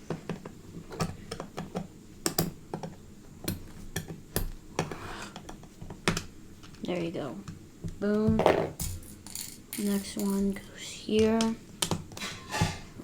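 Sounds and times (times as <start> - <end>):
plastic bricks clicking together: 8.8 - 10.6.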